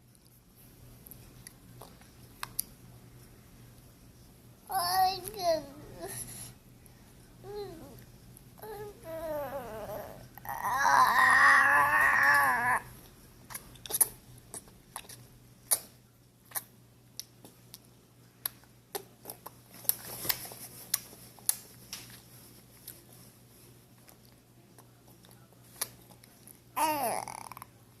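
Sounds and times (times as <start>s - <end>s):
baby cooing and squealing: 8.6s - 12.9s, 26.8s - 27.5s.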